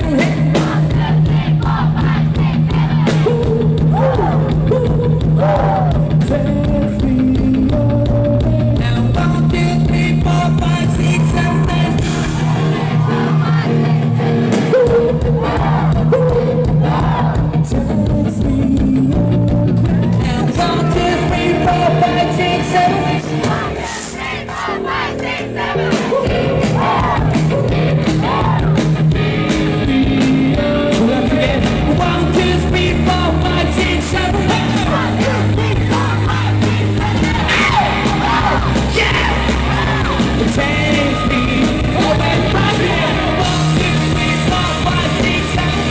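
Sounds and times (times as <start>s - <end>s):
live rock band playing: 0.0s - 45.9s
person singing: 17.7s - 28.8s, 29.9s - 45.9s.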